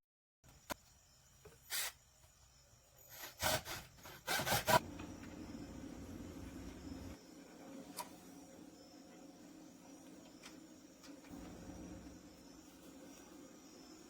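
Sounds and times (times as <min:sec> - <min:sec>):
faint steady hum: 0:00.5 - 0:14.0.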